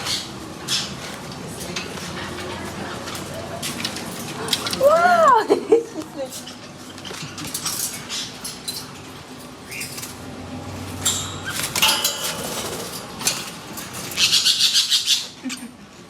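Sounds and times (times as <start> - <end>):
light metallic clinks and rattles: 11.0 - 14.2
parrot squawking: 14.1 - 15.6.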